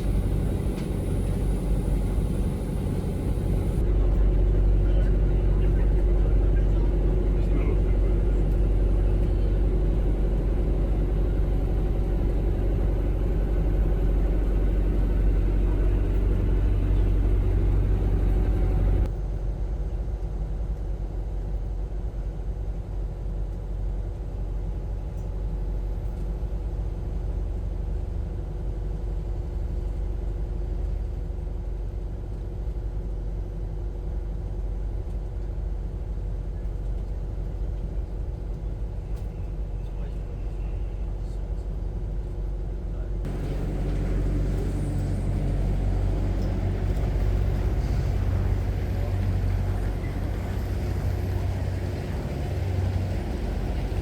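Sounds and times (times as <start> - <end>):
low vehicle rumble: 0.0 - 19.4, 43.0 - 54.0.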